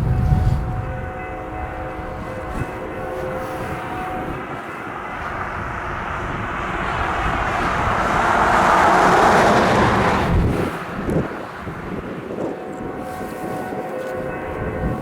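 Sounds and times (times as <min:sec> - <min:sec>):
vehicle passing by: 0:05.8 - 0:12.2.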